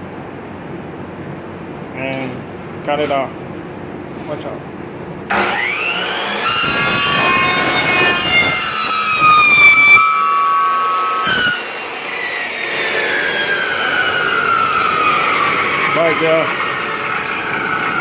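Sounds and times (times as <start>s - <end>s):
electric saw cutting hose: 5.3s - 18.0s.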